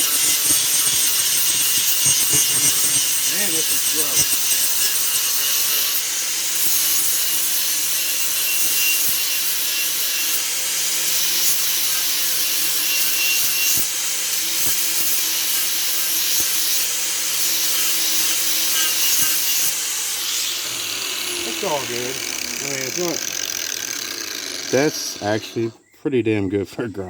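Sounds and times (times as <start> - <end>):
grinder motor hum: 0.0 - 8.2, 14.4 - 25.8
grinder grinding antler: 0.0 - 25.9.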